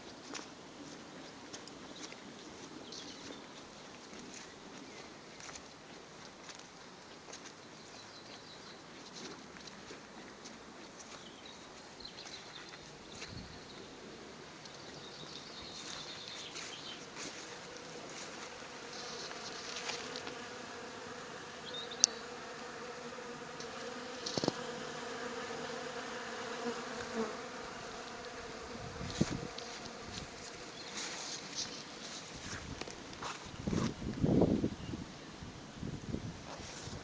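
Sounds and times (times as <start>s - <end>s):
bees buzzing: 15.7s - 32.6s.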